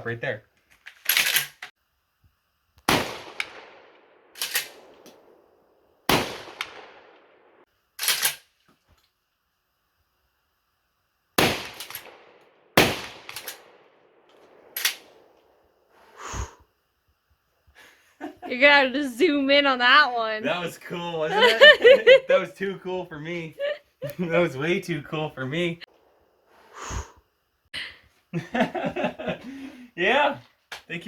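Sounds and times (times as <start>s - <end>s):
shotgun blasts echoing: 2.9s - 5.4s, 6.1s - 7.6s, 11.4s - 15.3s.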